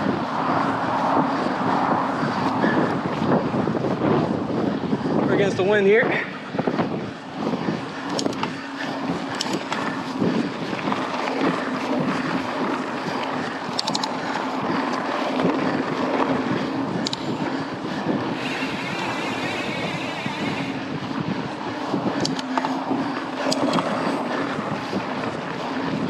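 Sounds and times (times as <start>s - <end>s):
wind buffeting microphone: 0.0s - 26.0s
tyres rolling on dirt: 6.3s - 26.0s
light clicks and rattles: 13.7s - 14.2s.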